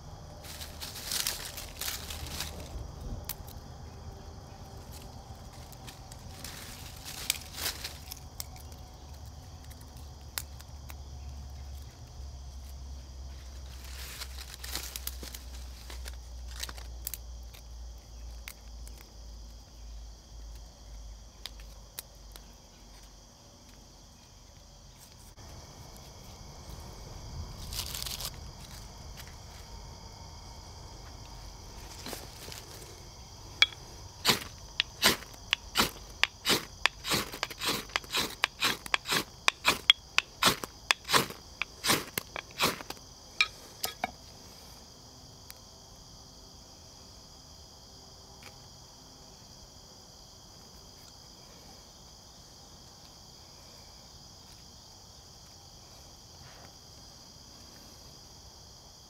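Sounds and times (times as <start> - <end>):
high-pitched insect chorus buzzing: 0.0 - 59.0
sharp cracks: 33.6 - 44.0.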